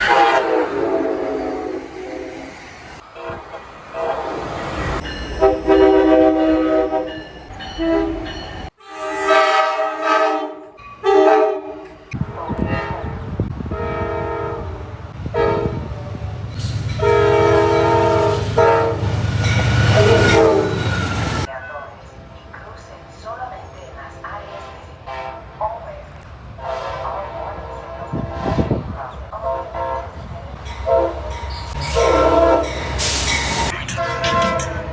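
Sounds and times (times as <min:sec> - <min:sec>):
locomotive air horn blasts: 0:00.0 - 0:02.5, 0:03.2 - 0:04.5, 0:05.4 - 0:21.5, 0:26.6 - 0:27.4, 0:28.1 - 0:34.9
low rumble of passing train: 0:00.0 - 0:09.6, 0:11.5 - 0:34.9.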